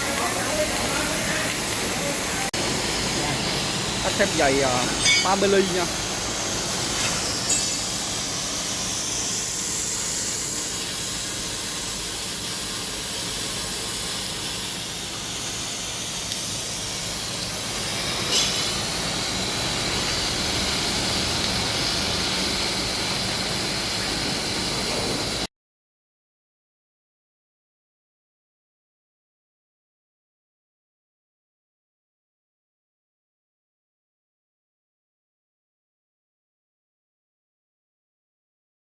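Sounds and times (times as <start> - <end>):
laser cutter gas jet hissing: 0.0 - 25.5.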